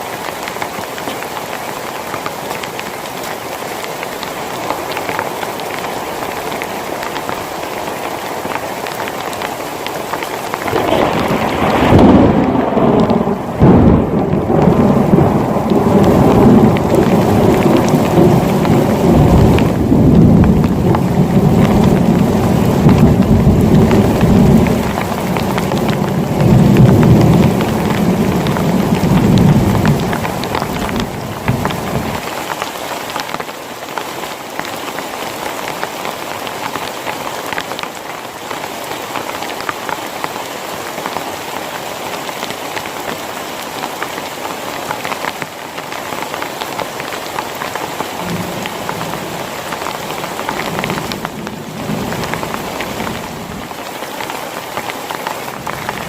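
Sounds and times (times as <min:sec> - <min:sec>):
heavy rain: 0:00.0 - 0:56.0
thunder crack and rumble: 0:10.6 - 0:32.2, 0:55.5 - 0:56.0.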